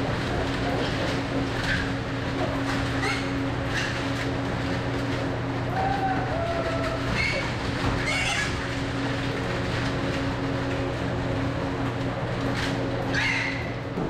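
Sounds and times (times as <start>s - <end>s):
steady mechanical hum: 0.0s - 14.0s
pigs squealing: 3.0s - 4.1s, 5.8s - 8.6s, 13.1s - 13.7s.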